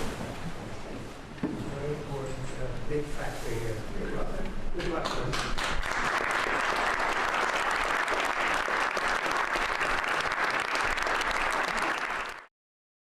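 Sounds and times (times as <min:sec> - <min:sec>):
audience applauding: 0:04.8 - 0:12.5.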